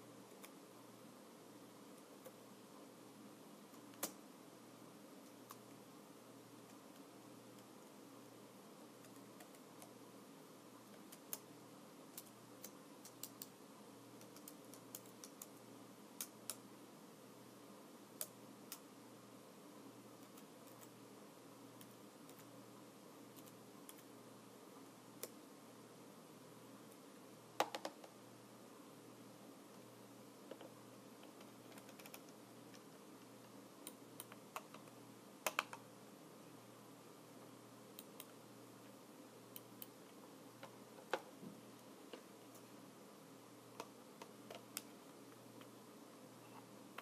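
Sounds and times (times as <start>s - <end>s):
faint steady hiss: 0.0s - 47.0s
keyboard keys clicking: 31.3s - 32.4s.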